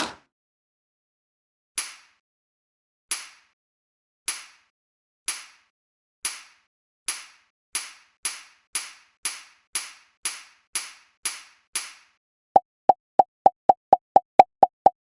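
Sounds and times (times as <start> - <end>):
sharp snapping hits: 0.0 - 0.2.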